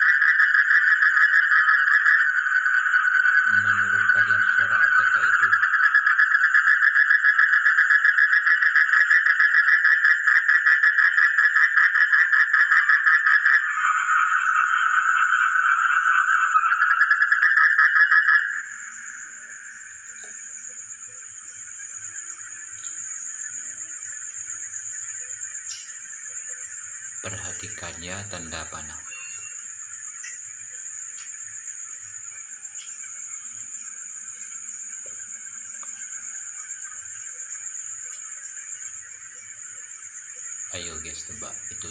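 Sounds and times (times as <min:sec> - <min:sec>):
high-pitched drone: 0:03.5 - 0:05.6, 0:27.2 - 0:30.8, 0:39.1 - 0:41.9
faint short tones: 0:29.0 - 0:29.7.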